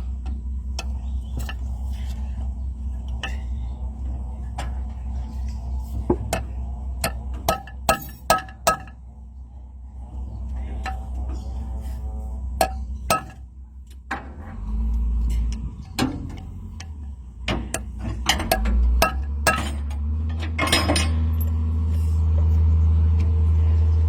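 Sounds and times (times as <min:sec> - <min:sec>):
low engine-like rumble: 0:00.0 - 0:24.0
metal tools clinking: 0:17.7 - 0:21.6.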